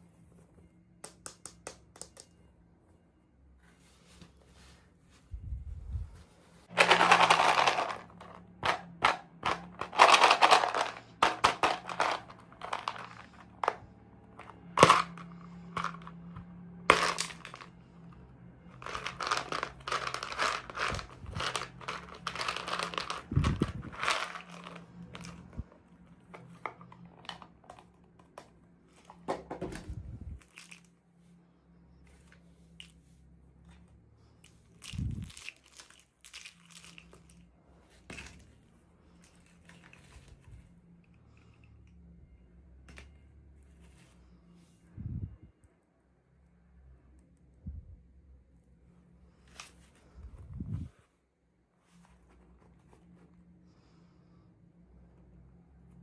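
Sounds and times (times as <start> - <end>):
toy packaging crinkling and tearing: 6.7 - 13.8, 14.8 - 16.1, 16.9 - 17.8, 18.8 - 25.6, 30.4 - 30.9, 34.6 - 37.5.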